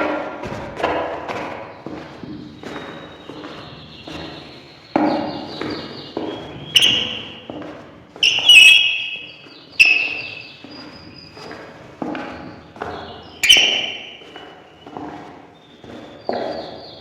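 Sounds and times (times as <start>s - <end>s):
high squeak of steps: 2.4s - 11.8s, 12.4s - 17.0s.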